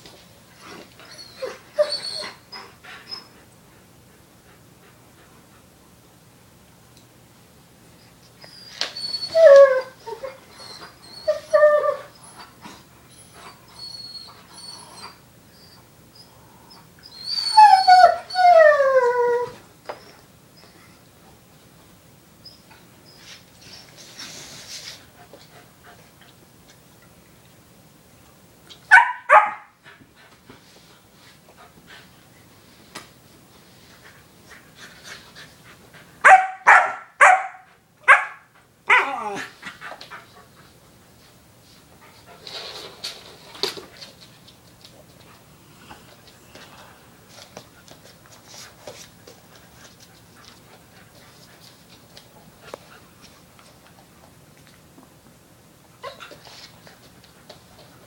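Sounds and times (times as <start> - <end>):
dog whining: 1.0 - 3.4, 8.4 - 20.2, 38.9 - 39.5
puppy barking: 28.9 - 29.7, 36.2 - 39.2
faint scuffling: 41.2 - 54.8.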